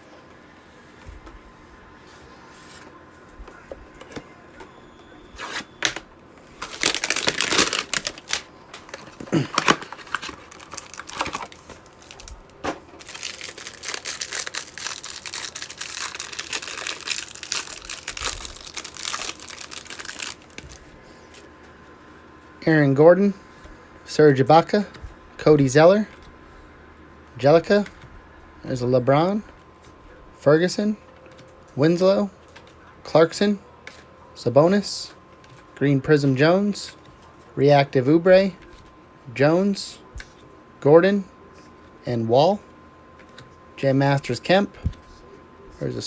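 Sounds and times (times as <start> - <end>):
packaging being torn and crinkled: 5.4 - 20.8.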